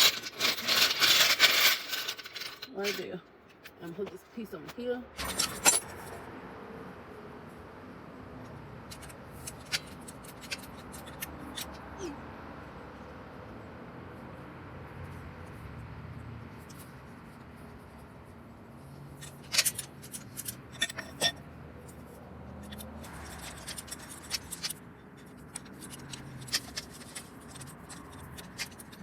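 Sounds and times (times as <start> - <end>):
metal tools clinking: 0.0 - 6.2, 8.9 - 11.8, 19.2 - 29.0.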